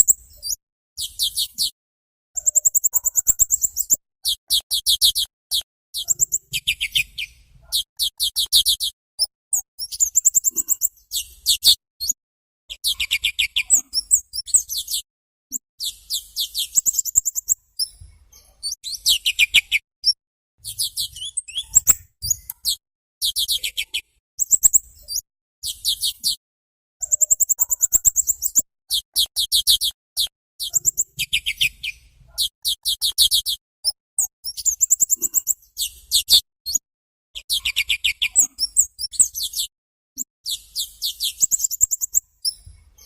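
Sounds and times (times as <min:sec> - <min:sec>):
small bird chattering trills: 0:02.4 - 0:26.4, 0:27.0 - 0:36.8, 0:37.4 - 0:39.7, 0:40.4 - 0:42.7.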